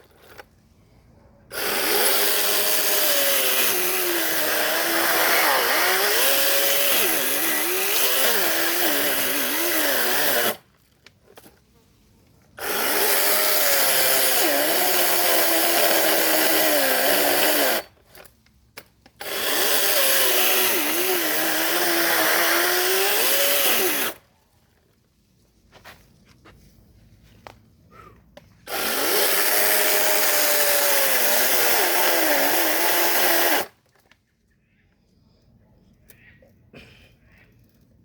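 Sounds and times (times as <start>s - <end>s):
power saw cutting branches: 1.5s - 10.7s, 12.6s - 18.3s, 19.2s - 24.3s, 28.6s - 33.8s.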